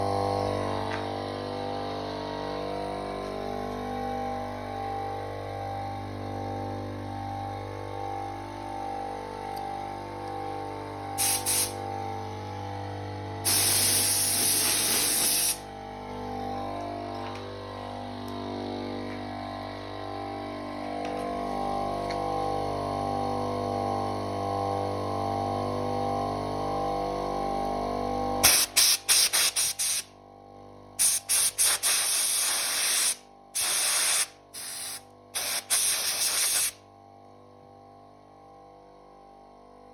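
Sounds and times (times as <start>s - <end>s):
compressor motors humming: 0.0s - 39.3s
compressed air hissing: 11.2s - 11.8s, 13.4s - 15.7s, 28.4s - 30.1s, 31.0s - 36.8s.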